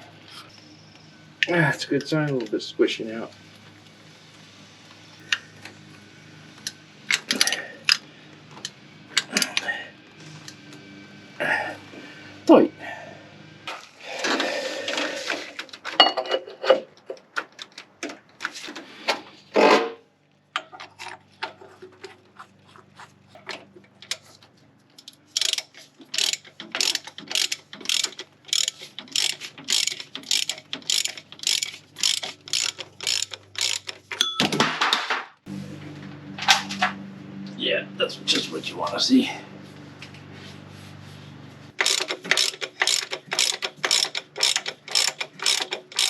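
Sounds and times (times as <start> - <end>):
ratchet wrench clicking: 6.6 - 8.0, 25.0 - 34.2, 41.8 - 46.0.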